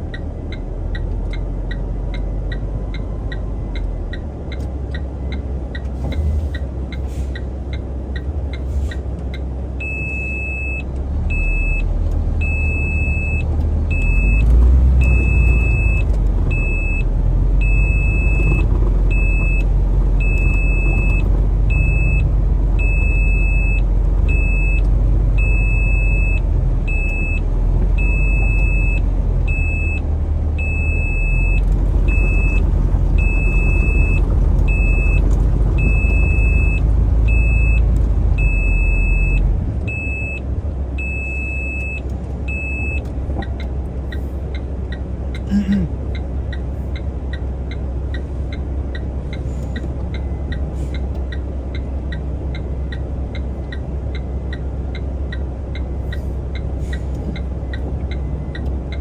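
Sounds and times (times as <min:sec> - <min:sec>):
truck engine rumbling: 0:00.0 - 0:59.0.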